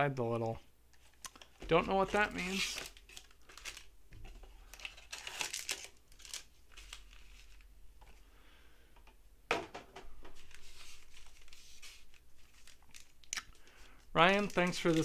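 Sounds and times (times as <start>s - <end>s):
foil wrappers crinkling: 1.9s - 3.9s, 4.6s - 7.7s, 10.4s - 15.0s.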